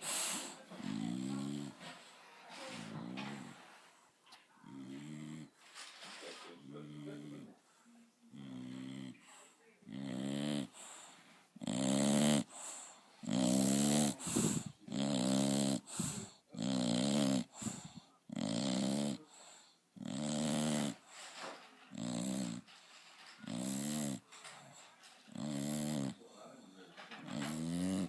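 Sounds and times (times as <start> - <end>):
dog snoring loudly: 0.0 - 1.9, 3.0 - 3.6, 4.6 - 5.5, 8.3 - 21.1, 21.9 - 22.7, 23.4 - 24.6, 25.2 - 26.3, 27.0 - 28.0.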